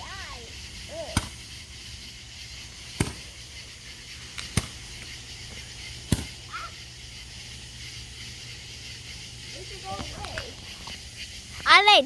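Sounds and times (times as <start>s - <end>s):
firework bangs: 0.0s - 7.2s.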